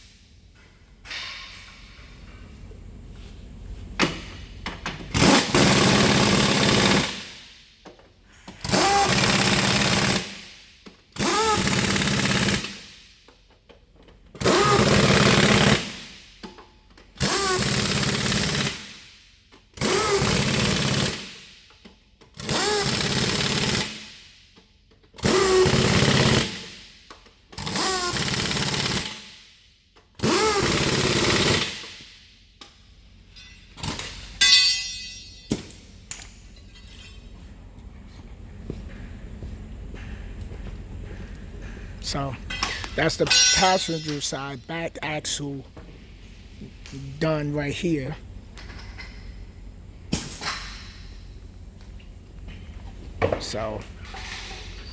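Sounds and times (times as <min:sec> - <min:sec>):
pneumatic air tool whining: 0:05.1 - 0:07.3, 0:08.5 - 0:10.5, 0:11.2 - 0:13.0, 0:14.4 - 0:16.1, 0:17.2 - 0:19.0, 0:19.8 - 0:21.6, 0:22.4 - 0:24.3, 0:25.2 - 0:26.9, 0:27.6 - 0:29.5, 0:30.2 - 0:32.1.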